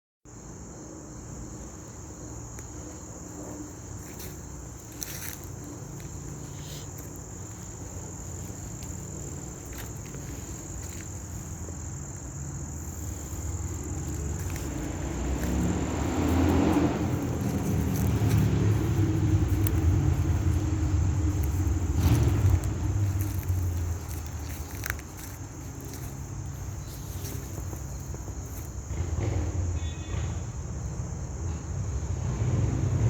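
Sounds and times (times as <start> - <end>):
insects trilling: 0.3 - 33.0
car passing: 1.2 - 30.3
low rumble: 12.8 - 25.0.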